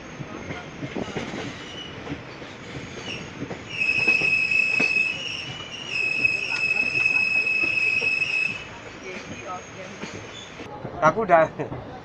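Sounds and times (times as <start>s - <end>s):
high-pitched wheel squeal: 3.0s - 8.7s.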